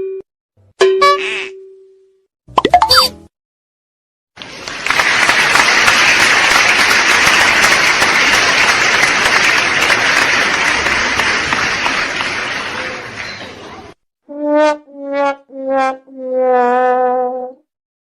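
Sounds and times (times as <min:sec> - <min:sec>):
crowd applause: 0:04.4 - 0:14.0.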